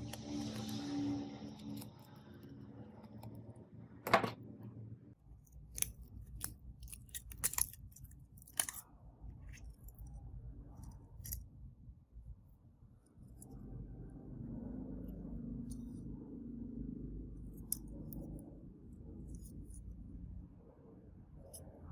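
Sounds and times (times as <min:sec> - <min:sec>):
faint low hum: 0:00.0 - 0:21.9
hand tools clicking and snipping: 0:05.7 - 0:08.8.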